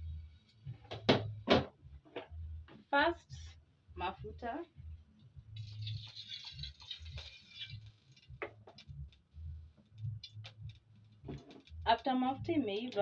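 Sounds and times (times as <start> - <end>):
oil pouring into a pot: 5.6 - 8.4.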